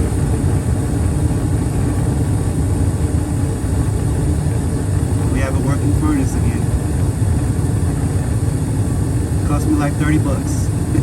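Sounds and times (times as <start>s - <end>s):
faint hum: 0.0s - 11.0s
gas furnace running: 0.0s - 11.0s.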